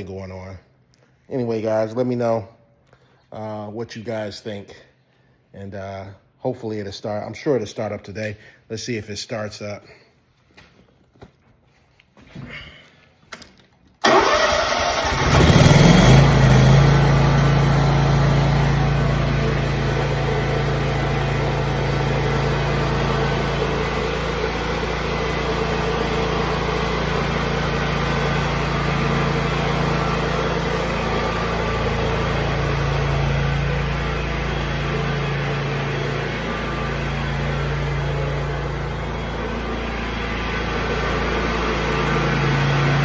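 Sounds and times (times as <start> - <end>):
mower engine running: 14.0 - 43.0.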